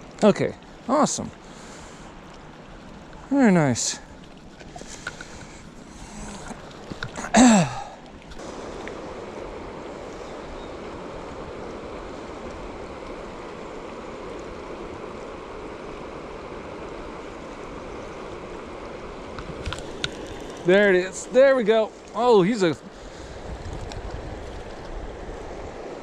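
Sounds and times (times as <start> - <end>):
man sighing: 7.2 - 8.0
steady rushing noise: 8.4 - 26.0.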